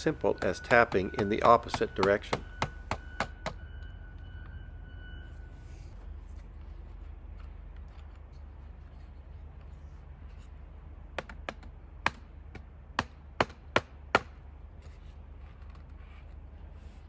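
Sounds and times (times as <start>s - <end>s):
tool tapping metal cleat: 0.0s - 3.6s.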